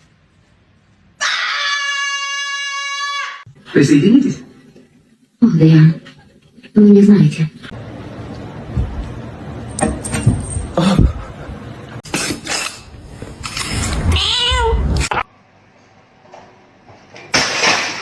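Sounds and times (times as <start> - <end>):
cat meowing: 14.1 - 15.0.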